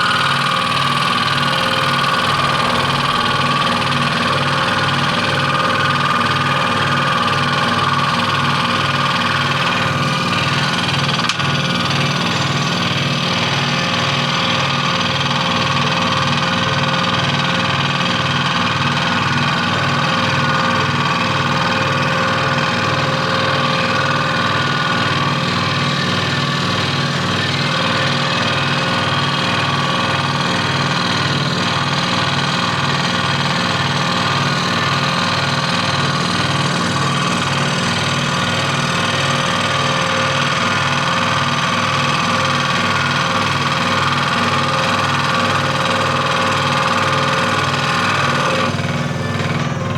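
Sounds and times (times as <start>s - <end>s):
scroll saw cutting wood: 0.0s - 49.9s.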